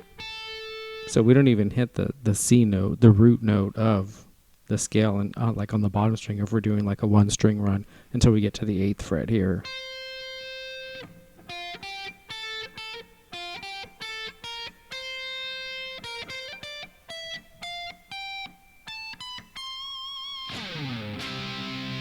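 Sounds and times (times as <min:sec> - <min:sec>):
clean electric guitar single notes: 0:00.0 - 0:01.5, 0:09.6 - 0:22.0.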